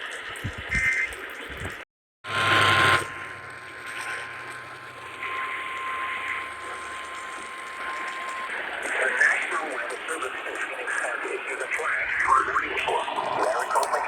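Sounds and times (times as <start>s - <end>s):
steady alert tone: 2.3s - 8.8s
radio hiss and static: 2.4s - 14.0s.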